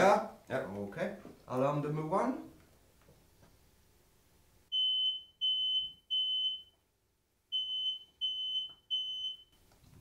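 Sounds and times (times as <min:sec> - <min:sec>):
smoke alarm high-pitched beeps: 0:04.7 - 0:06.8, 0:07.5 - 0:09.6.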